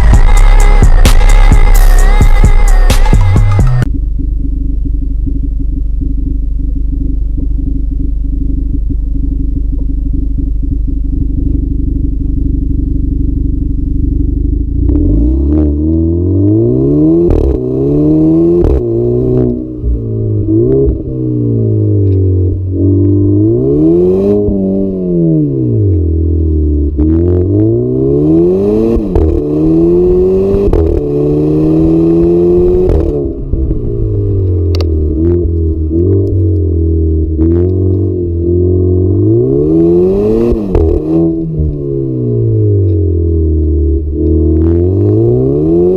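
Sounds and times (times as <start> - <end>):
car engine revving: 0.0 - 45.9
exhaust cracks and pops: 21.9 - 22.6, 28.9 - 31.2, 32.0 - 38.4, 42.8 - 43.2.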